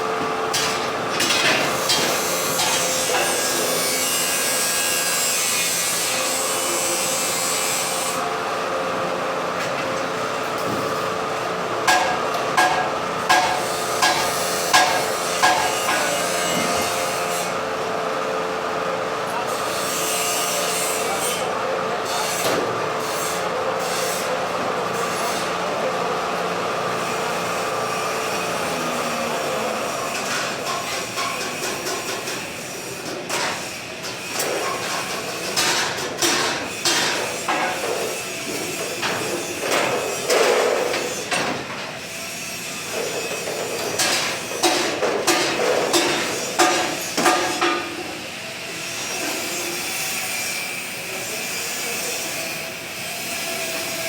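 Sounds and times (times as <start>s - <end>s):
power tool motor running: 26.9s - 31.2s.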